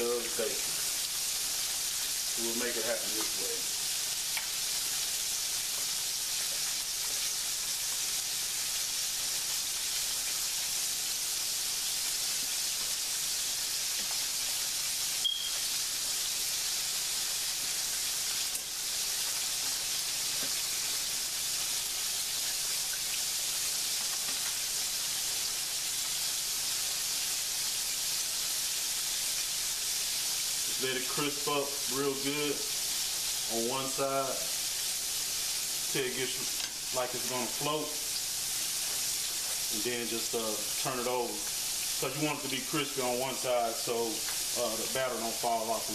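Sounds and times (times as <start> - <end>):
bacon deep-frying sizzle: 0.0 - 45.9.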